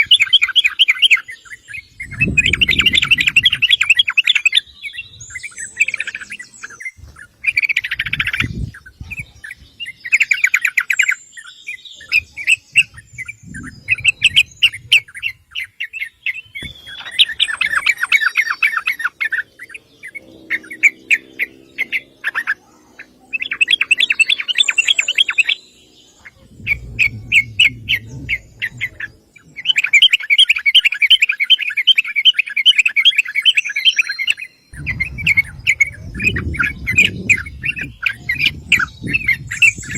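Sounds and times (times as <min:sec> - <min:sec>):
bird rapid chattering calls: 0:00.0 - 0:39.9
low rumbles: 0:26.2 - 0:29.4, 0:34.7 - 0:39.9.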